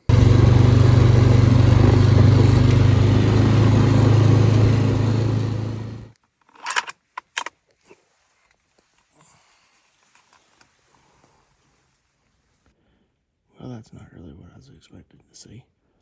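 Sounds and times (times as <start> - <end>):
atv engine running: 0.0 - 6.1.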